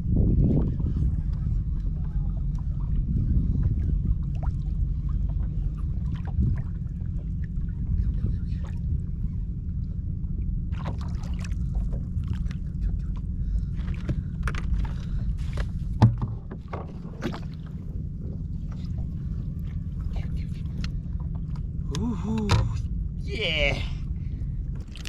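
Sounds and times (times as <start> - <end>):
steady low rumble: 0.0 - 25.0
kayak clicks and knocks: 15.6 - 17.4.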